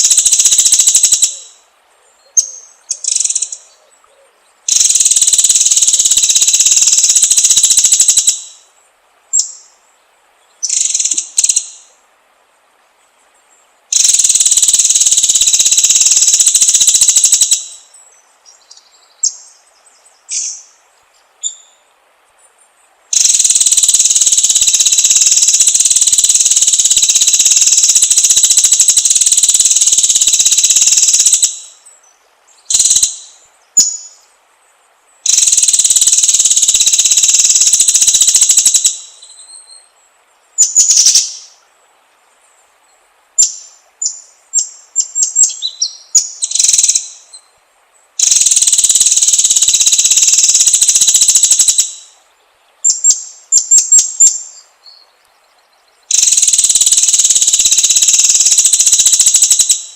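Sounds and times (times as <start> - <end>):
insect buzzing drone: 0.0 - 3.7, 4.6 - 12.6, 13.4 - 21.8, 22.7 - 42.7, 43.3 - 54.6, 55.6 - 59.9
birds chirping: 0.0 - 8.7, 9.3 - 12.0, 13.0 - 59.9.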